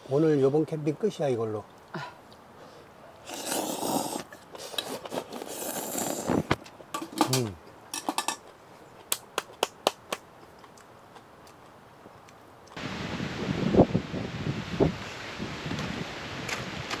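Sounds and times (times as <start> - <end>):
utensils and dishes clinking: 7.0 - 8.5.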